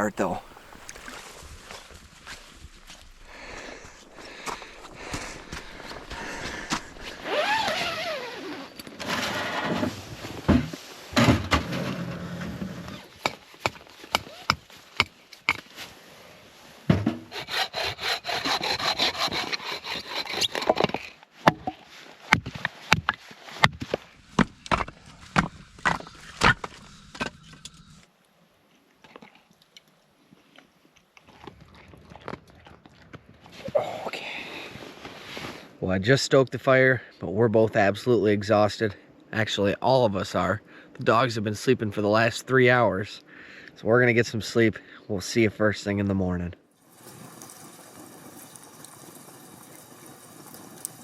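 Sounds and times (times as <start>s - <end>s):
hand saw cutting wood: 17.2s - 21.2s
sharp wood knocks and cracks: 20.6s - 27.4s.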